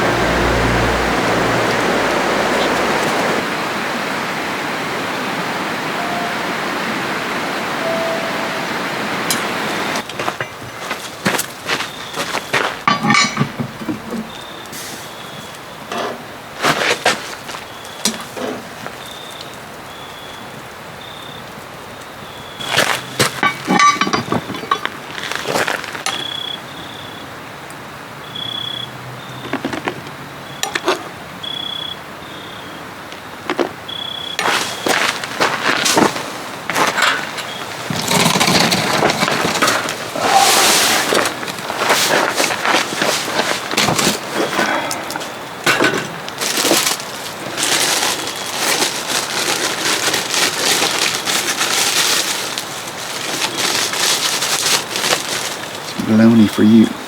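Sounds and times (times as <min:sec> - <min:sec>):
heavy rain on a tent: 0:00.0 - 0:12.9, 0:14.2 - 0:24.0, 0:34.4 - 0:57.0
background hiss: 0:00.0 - 0:27.6.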